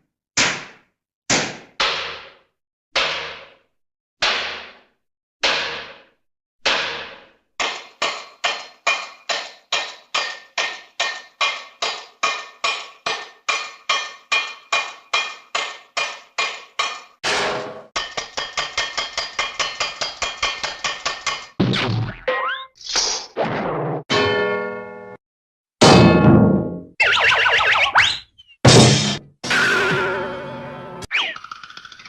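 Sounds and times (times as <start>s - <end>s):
ringing hammer-like knocks: 1.4s - 4.8s, 5.4s - 21.6s.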